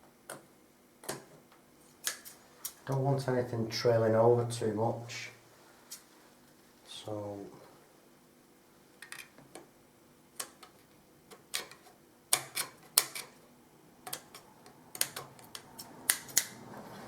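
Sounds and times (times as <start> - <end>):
scissors snipping wallpaper: 10.4 - 13.4, 14.0 - 16.6.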